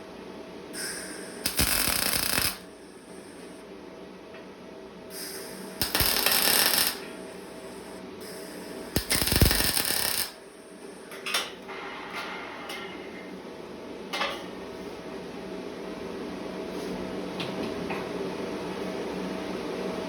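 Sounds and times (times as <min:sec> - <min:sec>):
steady low hum: 0:00.0 - 0:17.2
loud hissing bursts: 0:00.8 - 0:03.4, 0:05.1 - 0:10.4.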